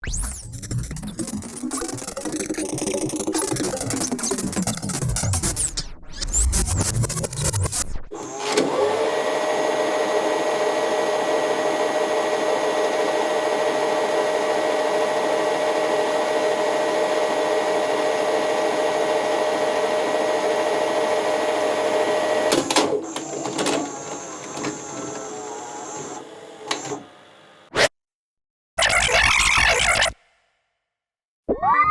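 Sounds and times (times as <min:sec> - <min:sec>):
tape machine rewinding whir: 0:08.1 - 0:27.8, 0:28.8 - 0:30.2.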